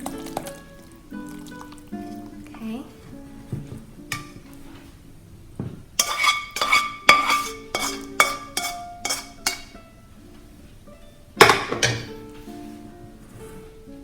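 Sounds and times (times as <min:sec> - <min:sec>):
soft background music: 0:00.0 - 0:14.0
utensil clinking against pan: 0:04.1 - 0:04.5, 0:06.0 - 0:09.9, 0:11.4 - 0:12.2.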